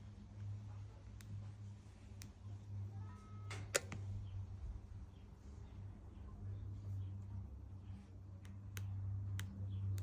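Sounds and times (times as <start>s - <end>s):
faint low hum: 0.0s - 10.0s
soft clicks: 8.4s - 10.0s.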